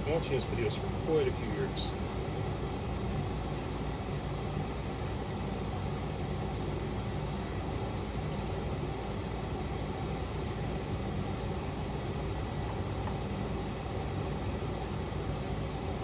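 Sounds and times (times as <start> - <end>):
low machine hum with hiss: 0.0 - 16.0.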